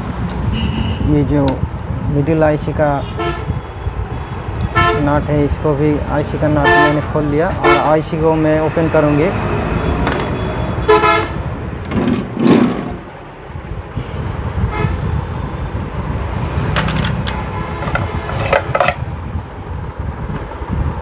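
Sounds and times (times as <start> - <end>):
road traffic noise: 0.0 - 21.0
vehicle horns tooting: 0.5 - 1.1, 3.0 - 3.9, 4.7 - 5.1, 6.6 - 8.0, 9.9 - 11.5, 14.0 - 15.1, 17.2 - 19.0.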